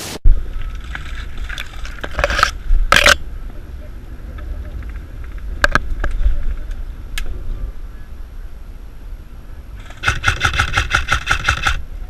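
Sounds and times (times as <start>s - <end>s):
airsoft rifle shots: 9.8s - 11.8s.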